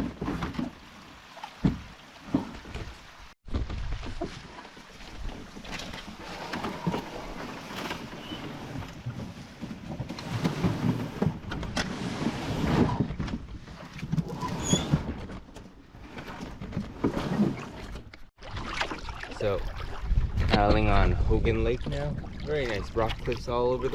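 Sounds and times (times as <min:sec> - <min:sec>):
paddle splashes: 0:00.0 - 0:15.2, 0:16.0 - 0:20.7, 0:21.7 - 0:23.9
wind on microphone: 0:19.6 - 0:23.2.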